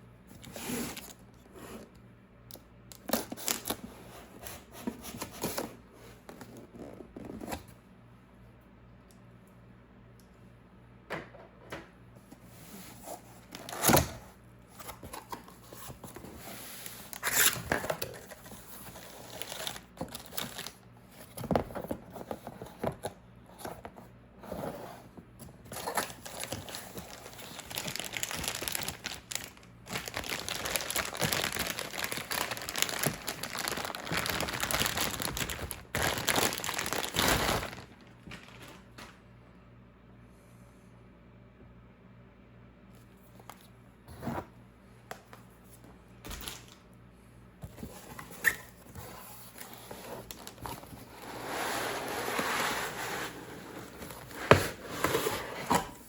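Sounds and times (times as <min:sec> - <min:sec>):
packaging crinkling and rustling: 0:02.9 - 0:05.7, 0:14.8 - 0:23.8, 0:25.6 - 0:39.2, 0:46.2 - 0:46.8, 0:47.7 - 0:56.0.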